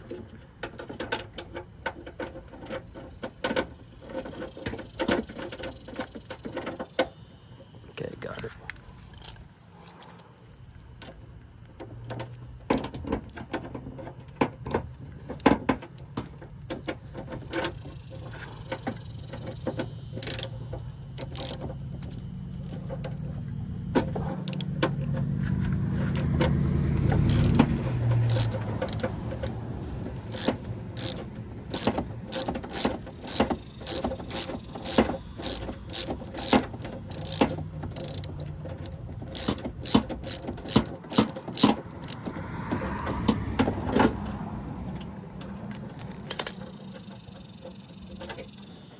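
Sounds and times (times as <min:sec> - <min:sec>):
hand ratchet clicking: 0:12.7 - 0:13.1, 0:17.2 - 0:23.2, 0:24.1 - 0:24.8, 0:26.1 - 0:43.8, 0:45.7 - 0:48.9.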